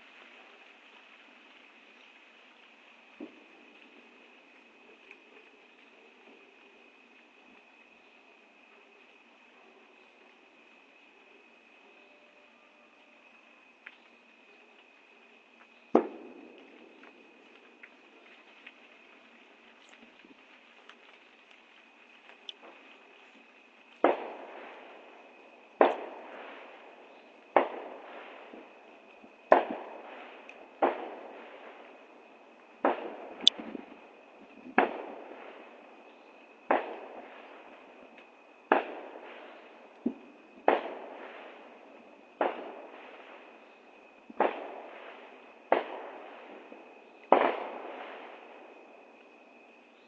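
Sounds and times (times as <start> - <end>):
fireworks booming: 15.9 - 17.4, 24.0 - 32.0, 38.6 - 43.6, 44.2 - 49.2.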